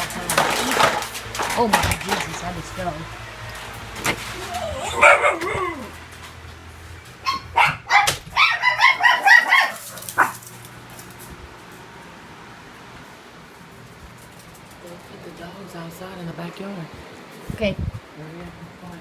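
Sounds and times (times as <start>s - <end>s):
dog barking: 4.8s - 5.9s, 7.2s - 10.4s.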